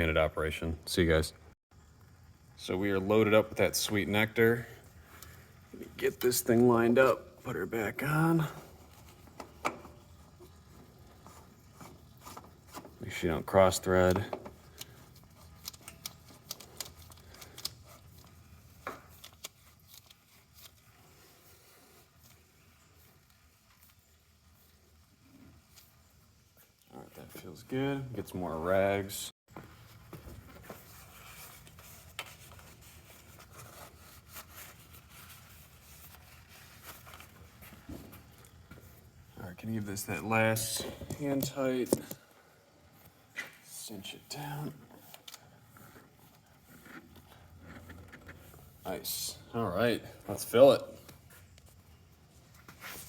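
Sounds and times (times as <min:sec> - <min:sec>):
faint rustling and handling noise: 0:01.8 - 0:53.0
oil filter clicking and scraping: 0:07.8 - 0:26.9, 0:44.4 - 0:49.1.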